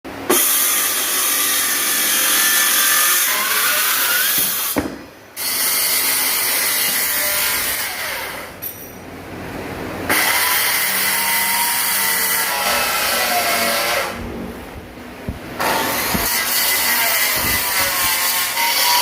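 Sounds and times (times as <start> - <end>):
power tool working wood: 15.3 - 19.0.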